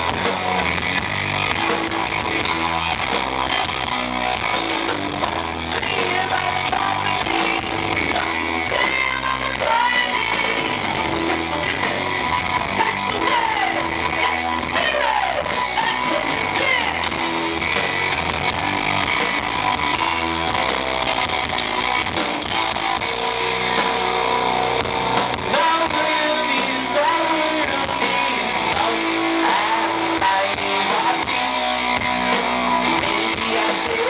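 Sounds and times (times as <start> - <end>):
person singing: 5.2 - 17.1, 25.5 - 34.0.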